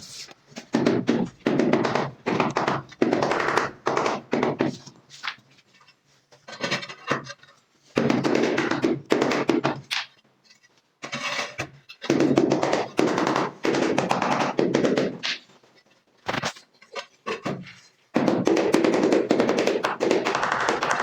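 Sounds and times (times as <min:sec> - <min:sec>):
rapid tapping on ceramic tile: 0:00.7 - 0:04.9, 0:08.0 - 0:10.1, 0:12.0 - 0:15.4, 0:17.3 - 0:21.0.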